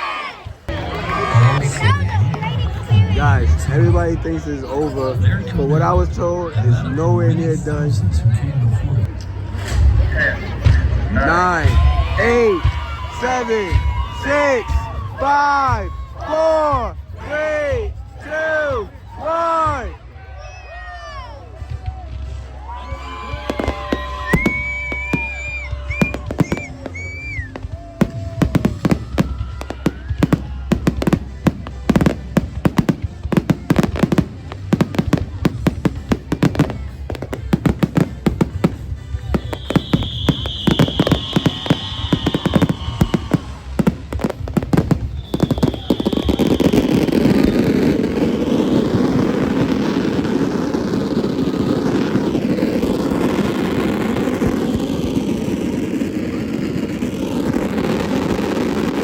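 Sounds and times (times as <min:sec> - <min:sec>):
fireworks bangs: 0:08.8 - 0:16.9, 0:21.6 - 0:59.0.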